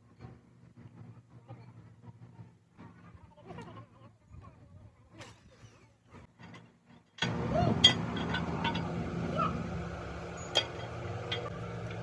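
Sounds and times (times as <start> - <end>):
low machine hum: 7.2 - 12.0.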